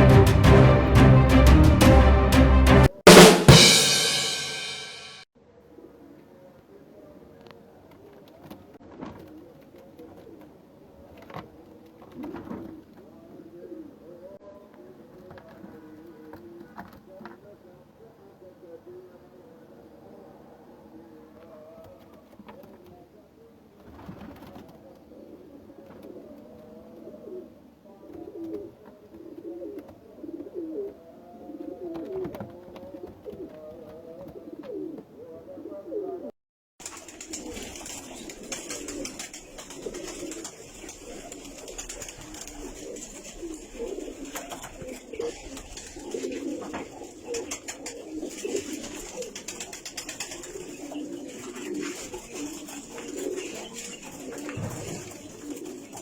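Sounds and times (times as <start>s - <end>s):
pigeons cooing: 9.2s - 14.4s, 23.9s - 56.0s.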